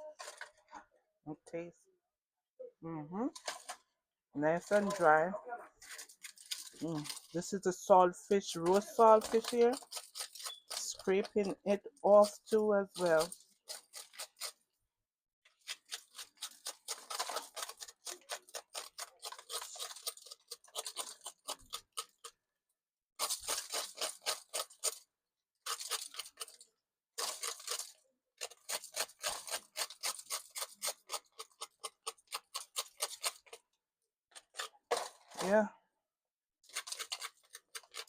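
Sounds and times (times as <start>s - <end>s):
rasping scraping of fish: 23.2s - 26.6s, 36.6s - 38.0s.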